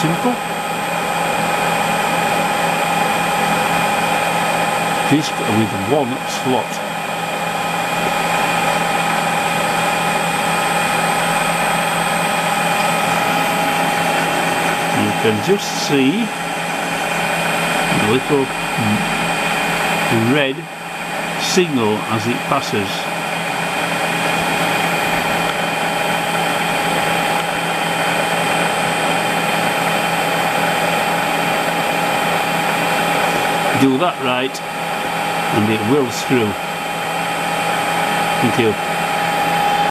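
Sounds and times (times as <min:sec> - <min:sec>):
lathe running with whining hum: 0:00.0 - 0:39.9.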